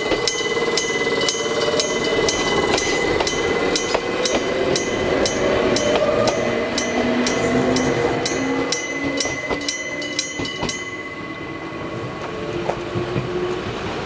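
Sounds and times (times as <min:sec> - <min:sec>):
level crossing bell ringing: 0:00.0 - 0:12.0
train passing: 0:00.0 - 0:14.0.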